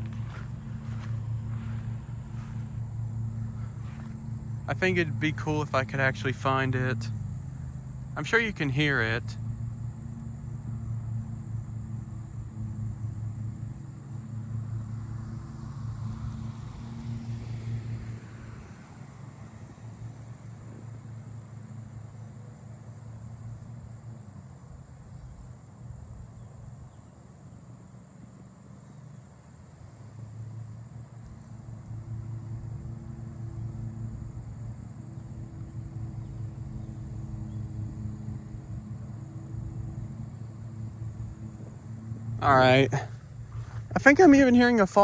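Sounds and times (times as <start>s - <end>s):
cricket trilling: 0.0s - 45.0s
distant traffic hum: 0.0s - 45.0s.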